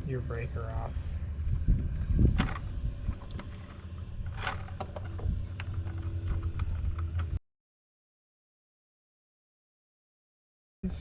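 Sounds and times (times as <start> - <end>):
low rumble: 0.0 - 7.4.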